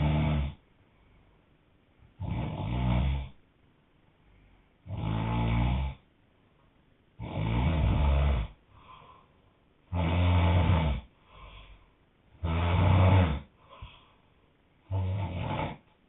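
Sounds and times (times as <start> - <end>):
man snoring loudly: 0.0 - 0.6, 2.2 - 3.4, 4.8 - 6.0, 7.2 - 8.6, 9.9 - 11.1, 12.4 - 13.5, 14.9 - 15.9
faint breath out: 8.7 - 9.6, 11.2 - 12.0, 13.6 - 14.5.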